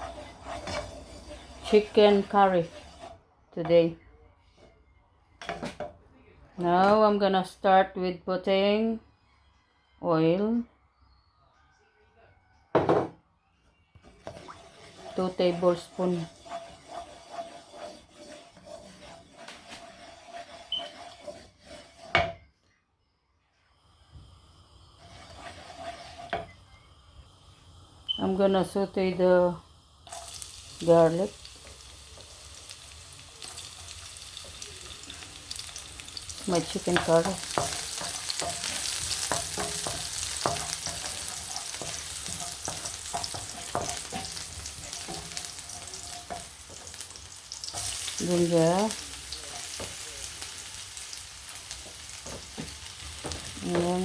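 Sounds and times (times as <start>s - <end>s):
garlic sizzling in hot oil: 0.0s - 3.2s, 23.8s - 54.0s
utensil scraping in a pan: 0.0s - 3.2s, 14.0s - 22.4s, 24.8s - 26.8s, 28.2s - 54.0s.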